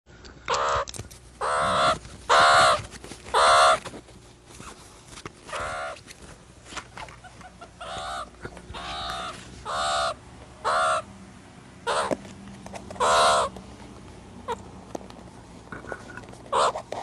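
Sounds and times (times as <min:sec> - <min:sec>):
meerkat calls: 0:00.5 - 0:03.9, 0:05.5 - 0:06.0, 0:07.2 - 0:11.1, 0:11.8 - 0:12.2, 0:13.0 - 0:13.5, 0:16.5 - 0:17.0.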